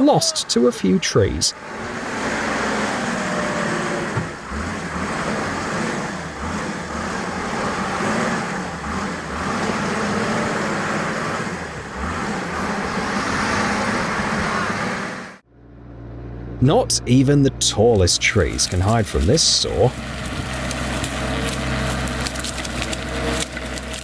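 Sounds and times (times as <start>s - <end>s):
large vehicle engine under load: 0.0s - 24.0s.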